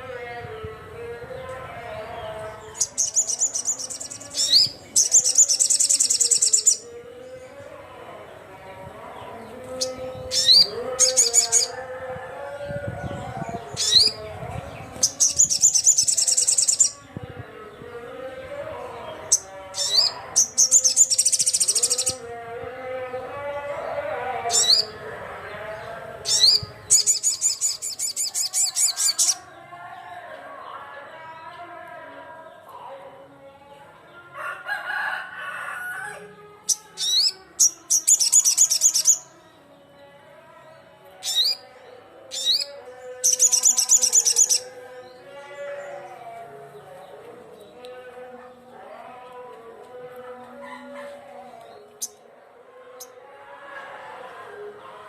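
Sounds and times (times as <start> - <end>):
bird chirping: 0.0 - 7.6, 19.0 - 22.3, 24.4 - 29.5, 36.7 - 39.7, 41.2 - 48.6
high-pitched bird trill: 2.6 - 6.9, 9.8 - 11.8, 13.6 - 14.2, 15.0 - 17.0, 19.3 - 22.2, 24.5 - 25.0, 26.2 - 29.4, 36.7 - 39.3, 41.2 - 41.6, 42.3 - 44.7.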